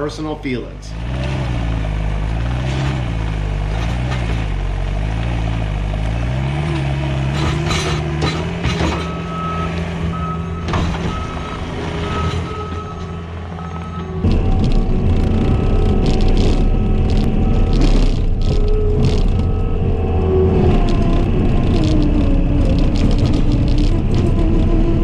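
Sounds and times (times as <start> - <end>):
skid steer engine under load: 0.0 - 25.0
backup alarm beeping: 9.0 - 20.2.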